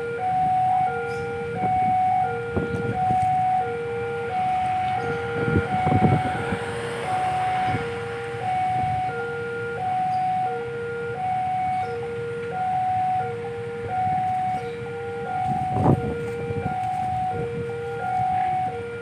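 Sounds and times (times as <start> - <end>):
road traffic: 0.0 - 19.0
two-tone level crossing alarm: 0.0 - 19.0
vehicle passing: 2.4 - 12.3.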